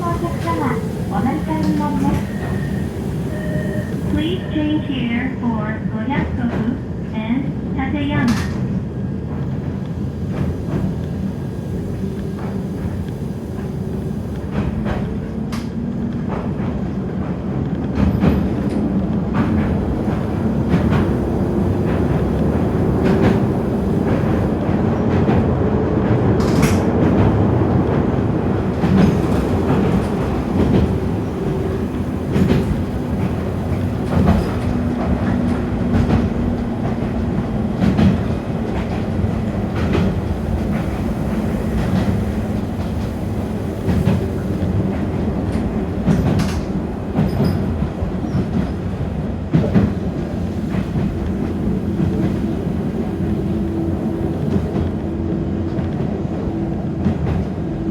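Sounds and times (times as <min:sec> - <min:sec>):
train motor hum: 0:00.0 - 0:06.6, 0:18.6 - 0:47.2
train running noise: 0:00.0 - 0:57.9.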